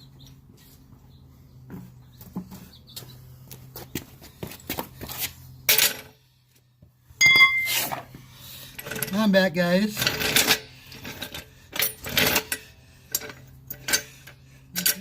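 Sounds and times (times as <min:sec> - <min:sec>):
knocks and metallic clatter: 0:05.6 - 0:06.2, 0:07.1 - 0:09.3
loud scrape: 0:07.5 - 0:08.1.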